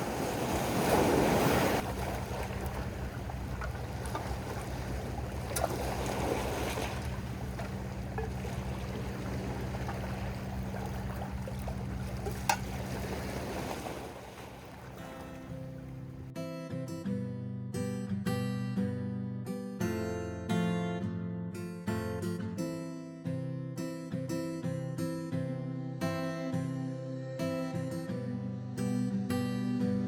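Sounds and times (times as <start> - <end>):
waves washing on shore: 0.0 - 16.3
wind buffeting microphone: 0.0 - 16.3
steady low hum: 1.8 - 16.3.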